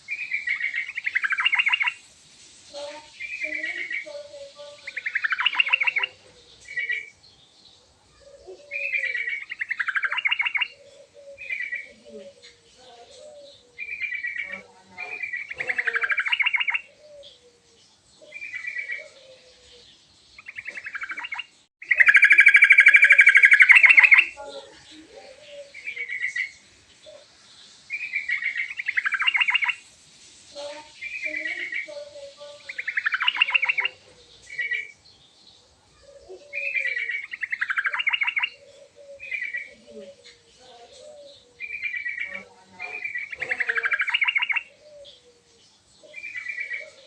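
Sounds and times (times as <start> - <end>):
bird chattering song: 0.0 - 2.0, 2.7 - 29.9, 30.6 - 47.0.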